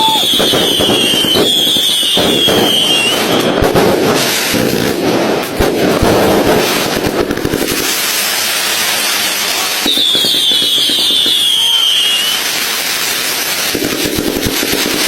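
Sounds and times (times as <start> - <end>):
firework whistle sliding downward: 0.0 - 3.7, 8.2 - 13.7
fireworks crackling and banging: 0.0 - 15.0.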